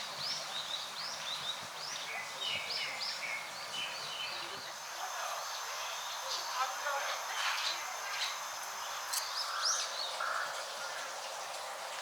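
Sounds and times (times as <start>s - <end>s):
outdoor hiss: 4.0s - 12.0s.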